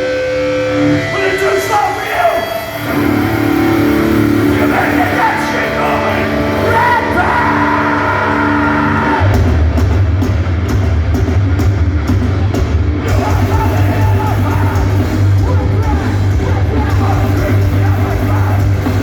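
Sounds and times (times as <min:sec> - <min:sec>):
electric guitar chords: 0:00.0 - 0:19.0
heavy bass: 0:00.0 - 0:19.0
person singing: 0:04.4 - 0:09.4, 0:13.1 - 0:19.0
drum beat: 0:09.3 - 0:19.0.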